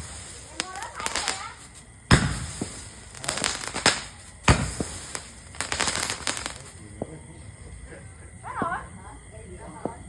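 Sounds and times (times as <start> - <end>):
fireworks banging and crackling: 0.0 - 10.0.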